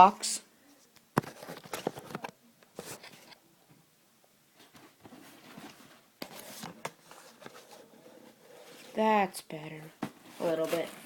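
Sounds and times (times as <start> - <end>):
cardboard box rustling: 10.0 - 11.0.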